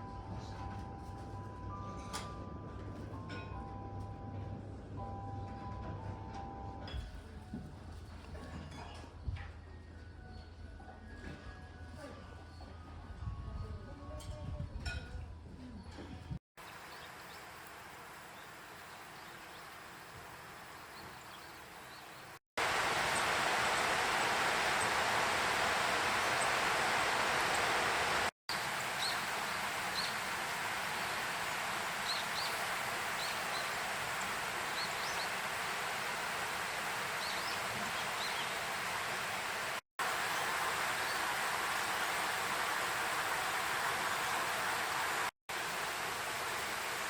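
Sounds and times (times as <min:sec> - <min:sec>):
river water rushing: 0:22.6 - 0:47.0.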